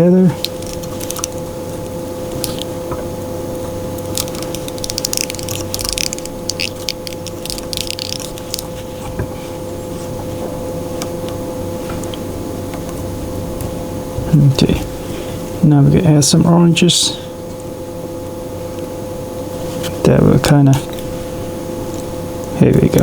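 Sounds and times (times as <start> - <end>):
steady hum: 0.0 - 23.0.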